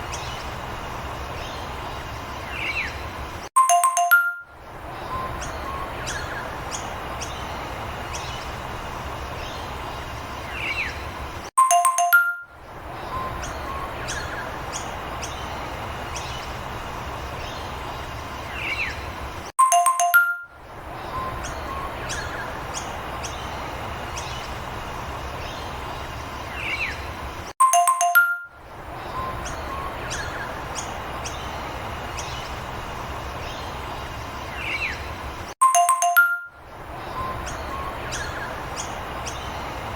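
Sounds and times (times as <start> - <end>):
bright chime: 3.6 - 4.5, 11.6 - 12.6, 19.6 - 20.6, 27.6 - 28.6, 35.6 - 36.6
bird chirps: 3.6 - 8.6, 18.4 - 24.6, 25.3 - 32.7, 33.3 - 39.8.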